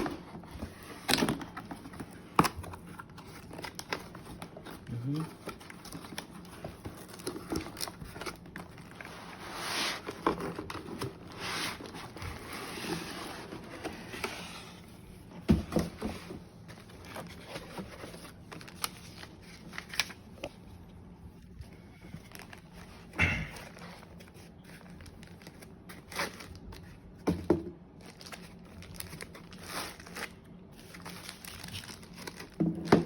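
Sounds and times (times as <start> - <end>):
cardboard packaging rustling: 0.0 - 33.0.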